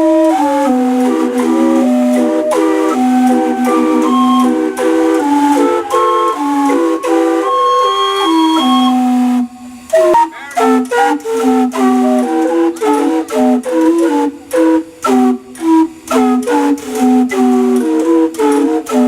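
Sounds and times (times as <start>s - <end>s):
steam whistles playing a tune: 0.0s - 19.0s.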